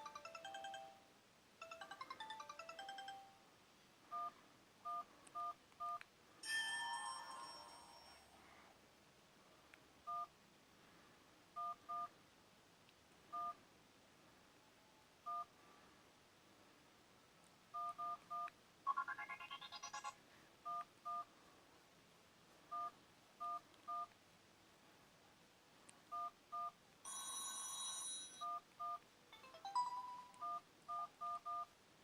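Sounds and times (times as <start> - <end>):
phone keypad beeps ringtone: 0.0 - 1.0, 1.6 - 3.3, 26.1 - 31.7.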